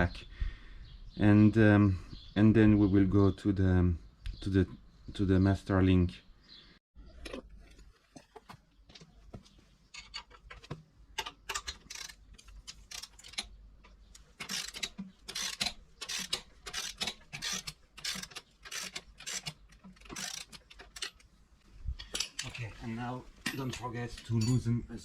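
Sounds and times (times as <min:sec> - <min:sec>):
ratchet wrench clicking: 0:11.5 - 0:13.4, 0:14.4 - 0:21.1.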